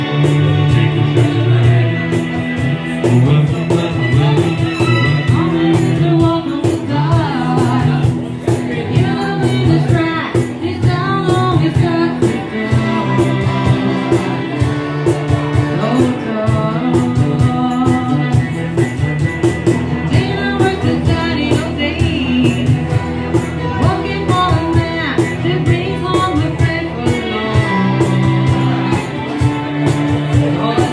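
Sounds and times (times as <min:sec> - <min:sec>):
woman singing: 0:00.0 - 0:14.8, 0:15.6 - 0:19.1, 0:20.0 - 0:30.9
band with steady drum beat: 0:00.0 - 0:30.9.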